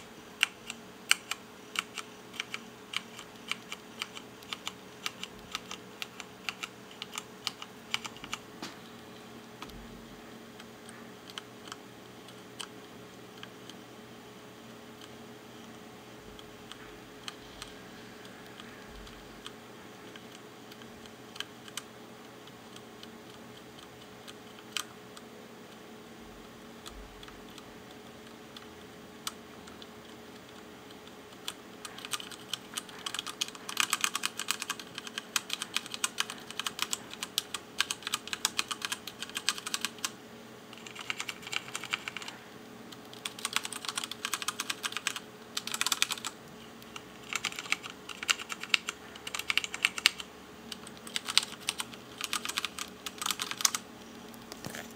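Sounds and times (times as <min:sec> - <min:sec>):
typing on mechanical keyboard: 0:00.0 - 0:08.4, 0:18.5 - 0:25.0, 0:29.2 - 0:42.4, 0:43.0 - 0:53.8.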